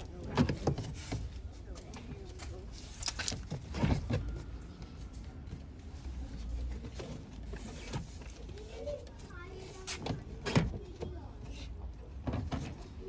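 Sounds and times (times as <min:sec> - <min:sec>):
clicks and knocks of parts handled: 0:01.8 - 0:04.2.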